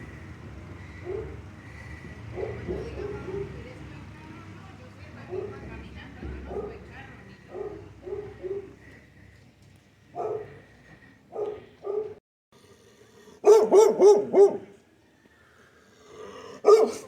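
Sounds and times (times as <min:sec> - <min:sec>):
dog barking: 0:01.0 - 0:01.4, 0:02.3 - 0:03.6, 0:05.3 - 0:05.7, 0:06.5 - 0:06.8, 0:07.5 - 0:08.8, 0:10.2 - 0:10.6, 0:11.3 - 0:12.2, 0:13.4 - 0:14.7, 0:16.6 - 0:17.0.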